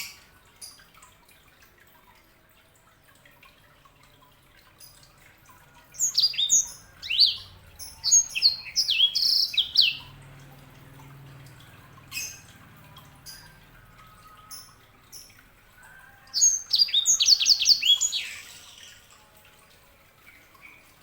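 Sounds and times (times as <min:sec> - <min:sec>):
canary singing: 0:05.9 - 0:10.4, 0:11.8 - 0:19.1.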